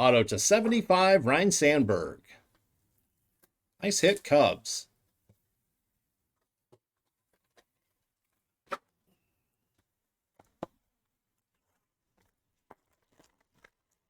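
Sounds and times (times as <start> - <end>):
cards and plastic packaging handled: 6.3 - 9.0, 9.7 - 14.0.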